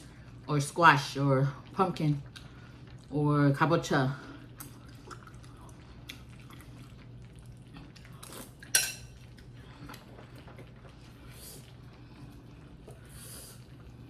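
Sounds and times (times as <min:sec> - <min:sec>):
low steady hum: 0:00.0 - 0:14.0
utensils clinking against dishes: 0:08.6 - 0:09.2.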